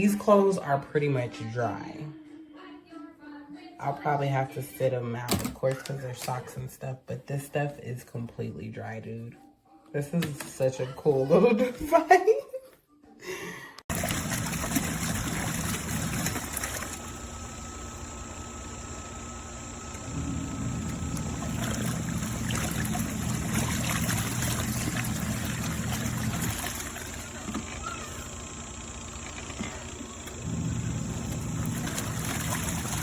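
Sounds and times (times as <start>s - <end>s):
washing machine motor running: 13.9s - 33.0s
water churning in a tub: 13.9s - 33.0s.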